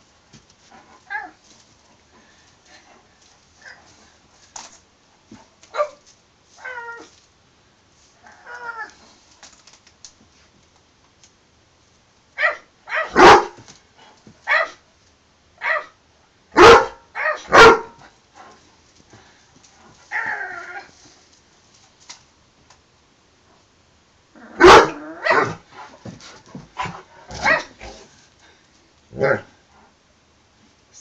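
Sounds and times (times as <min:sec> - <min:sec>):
dog barking: 0:12.4 - 0:13.6, 0:14.5 - 0:14.8, 0:16.6 - 0:18.0, 0:24.6 - 0:25.6, 0:27.4 - 0:27.7.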